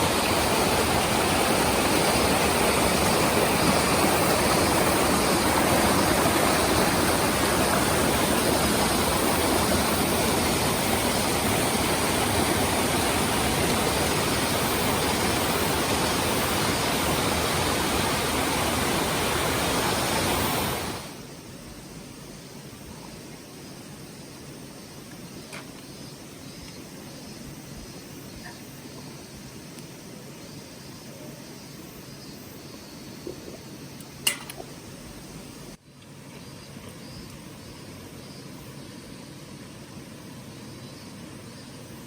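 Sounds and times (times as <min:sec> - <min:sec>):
water rushing in stream: 0:00.0 - 0:23.4.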